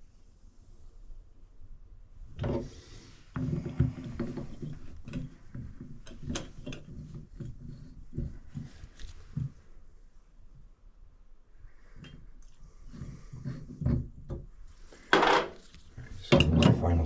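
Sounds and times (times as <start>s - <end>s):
clicks and knocks of fittings: 3.6s - 9.5s.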